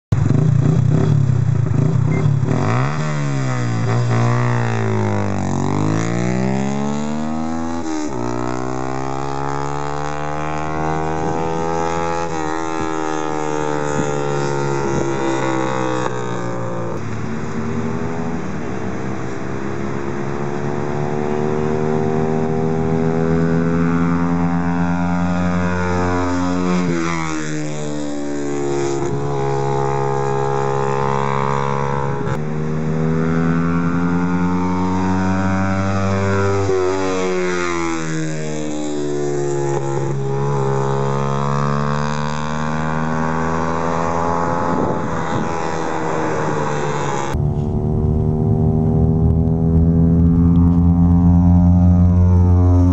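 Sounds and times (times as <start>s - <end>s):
motorcycle engine accelerating: 0.0s - 52.9s.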